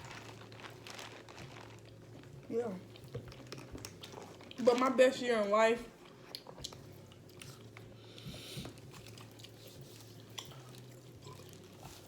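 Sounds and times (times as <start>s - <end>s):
chewing and mouth sounds: 2.8s - 4.7s, 6.0s - 12.0s.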